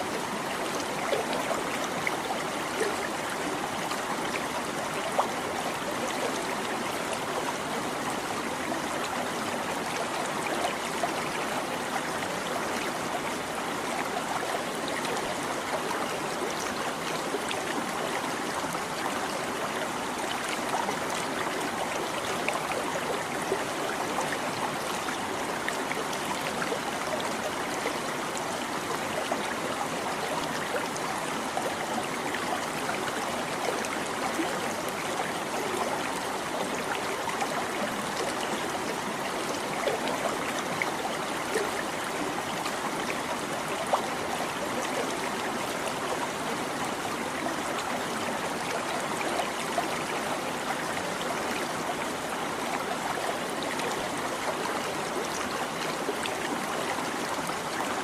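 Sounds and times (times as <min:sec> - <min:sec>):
stream babbling over rocks: 0:00.0 - 0:58.0.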